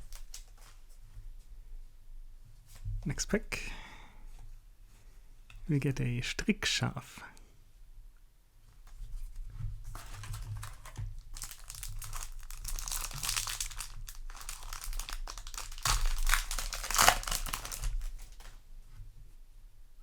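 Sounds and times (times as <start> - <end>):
foil wrapper crinkling and tearing: 9.9 - 18.6.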